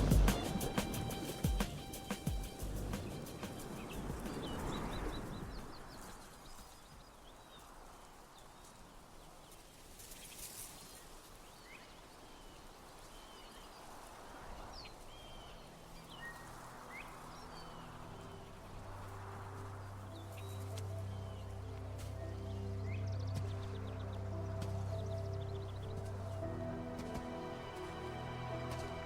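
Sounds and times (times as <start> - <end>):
low steady music tones: 0.0 - 5.7, 15.6 - 29.0
small birds chirping: 0.0 - 27.7
faint outdoor background: 0.0 - 29.0.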